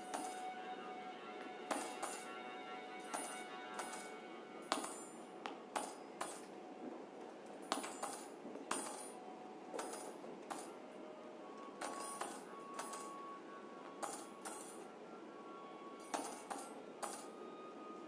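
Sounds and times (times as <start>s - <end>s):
soft held tone: 0.0s - 5.4s
quiet chamber music: 0.0s - 18.0s.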